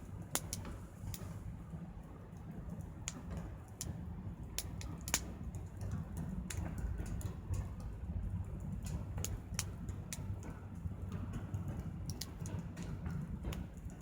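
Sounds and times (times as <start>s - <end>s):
wood fire crackling and popping: 0.0s - 1.4s, 2.6s - 14.0s
low steady rumble: 0.0s - 14.0s.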